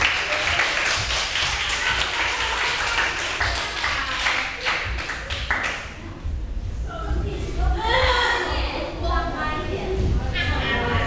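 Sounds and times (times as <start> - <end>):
group clapping: 0.0 - 6.0.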